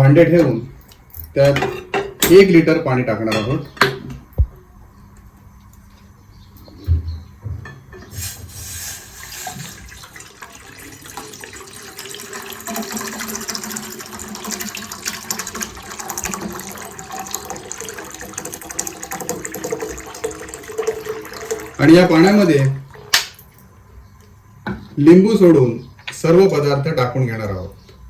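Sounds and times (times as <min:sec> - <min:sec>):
water pouring into a pot: 0:08.2 - 0:22.4.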